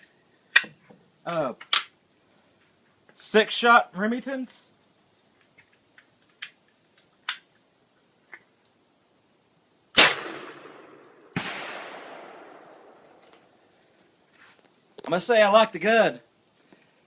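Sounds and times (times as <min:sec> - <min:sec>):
shotgun shot: 0:10.0 - 0:13.2.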